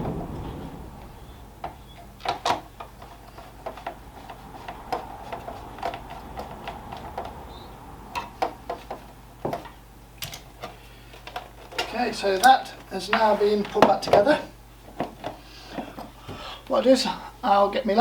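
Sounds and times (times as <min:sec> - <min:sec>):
sharp knocks: 0:00.0 - 0:07.5.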